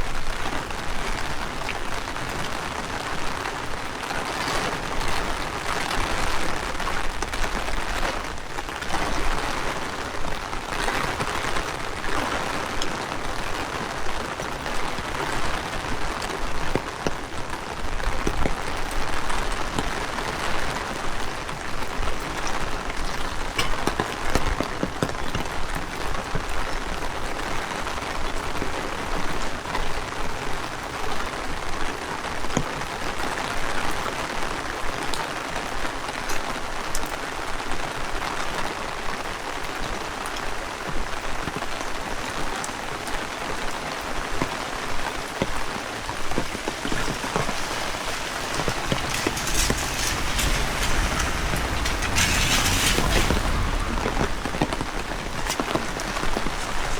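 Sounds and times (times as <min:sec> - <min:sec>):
heavy rain falling: 0:00.0 - 0:56.9
wind rumble on microphone: 0:45.5 - 0:56.9.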